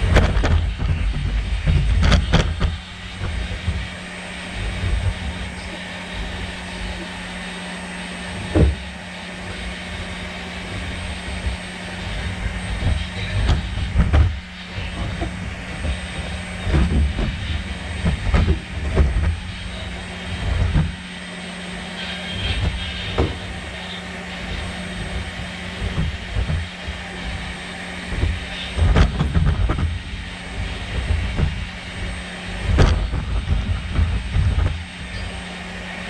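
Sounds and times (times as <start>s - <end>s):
robot motor hum: 0.0s - 36.0s
thumps and knocks from robot legs: 32.7s - 34.8s.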